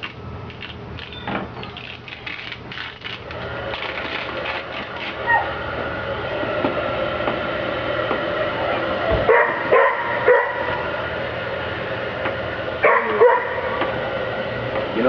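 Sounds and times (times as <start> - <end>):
steady machine hum: 0.0 - 15.0
dog barking: 9.3 - 10.7, 12.8 - 13.7.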